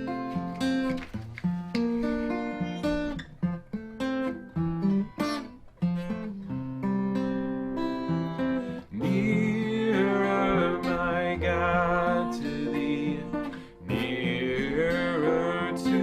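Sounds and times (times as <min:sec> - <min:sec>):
acoustic guitar strumming chords: 0:00.0 - 0:16.0
person singing: 0:08.9 - 0:16.0.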